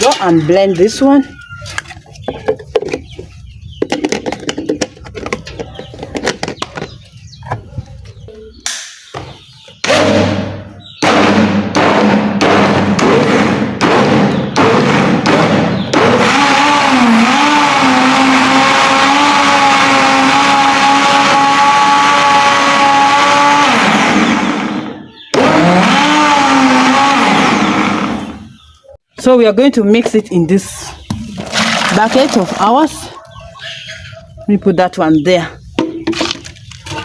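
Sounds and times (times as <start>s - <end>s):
electric blender running: 16.0s - 24.8s, 25.4s - 28.4s.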